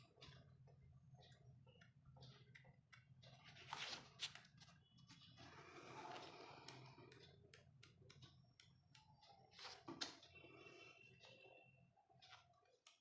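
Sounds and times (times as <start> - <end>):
book handling clicks and rustling: 3.4 - 4.8.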